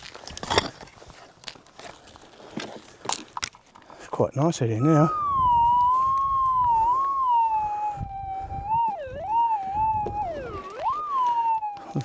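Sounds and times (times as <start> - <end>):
electronic whistle tone: 4.8 - 12.0.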